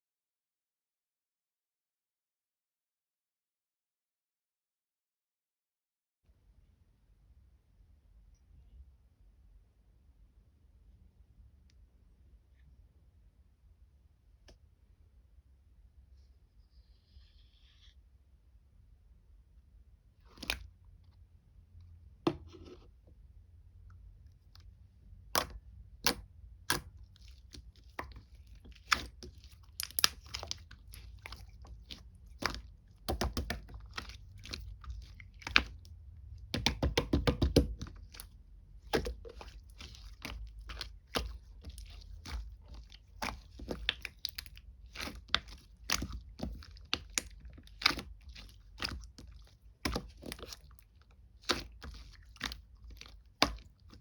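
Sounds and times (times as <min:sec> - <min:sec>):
slime squishing and popping: 0:25.3 - 0:54.0.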